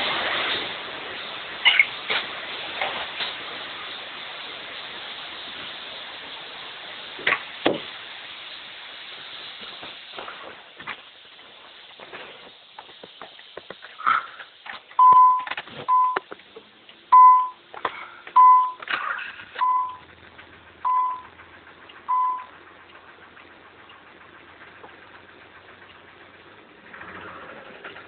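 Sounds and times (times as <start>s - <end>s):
clicks and rustles: 9.5s - 16.7s
short electronic beeps: 15.0s - 16.2s, 17.1s - 17.6s, 18.4s - 18.9s, 19.6s - 20.1s, 20.8s - 21.4s, 22.1s - 22.5s.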